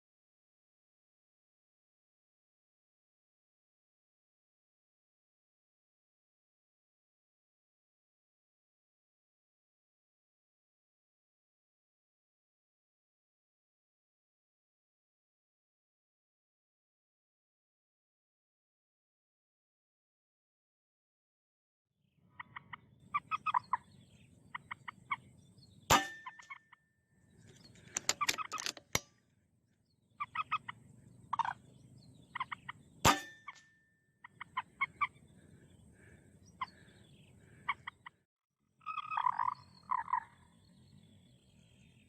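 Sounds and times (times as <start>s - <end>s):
moorhens croaking clucks: 22.3s - 25.4s, 27.4s - 29.0s, 30.1s - 33.1s, 34.2s - 38.2s, 38.8s - 40.6s.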